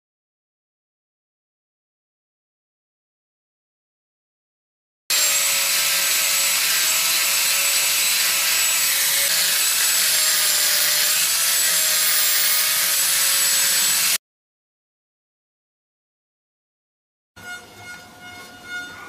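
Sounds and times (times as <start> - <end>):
power tool sanding wood: 5.1 - 14.2.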